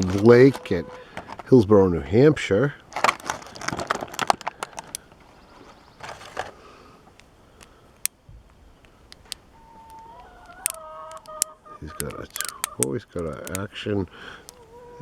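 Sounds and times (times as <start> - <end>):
plastic crinkling: 0.0 - 1.6, 2.7 - 6.6
light clicks: 7.1 - 13.7
hen calling faintly: 9.5 - 12.9.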